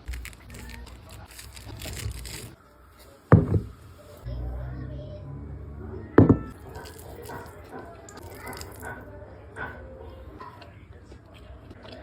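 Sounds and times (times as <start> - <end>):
kitchen handling noise: 3.3 - 3.8.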